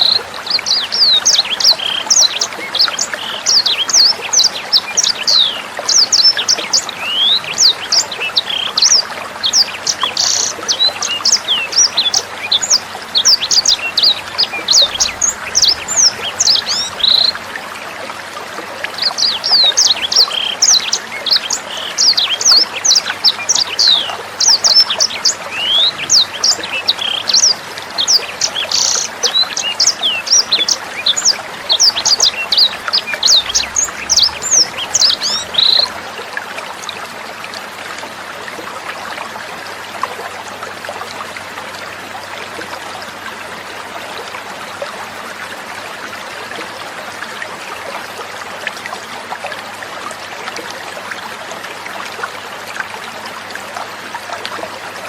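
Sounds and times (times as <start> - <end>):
birds chirping: 0.0 - 17.6, 19.0 - 36.2
water trickling: 0.0 - 55.0.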